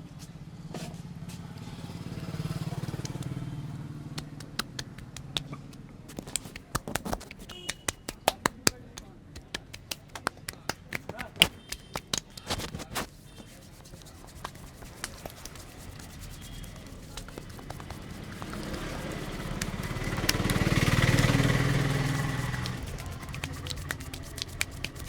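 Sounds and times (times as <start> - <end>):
motor vehicle passing: 0.6 - 8.8, 13.8 - 25.0
sharp massage taps: 2.8 - 3.4, 4.1 - 25.0.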